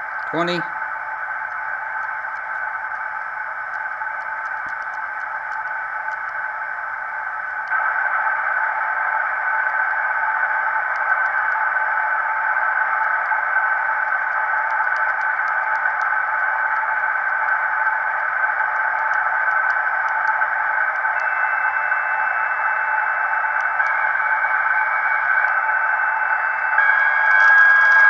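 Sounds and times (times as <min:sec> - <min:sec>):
faint static crackles: 0:00.0 - 0:28.0
radio band noise hiss: 0:00.0 - 0:28.0.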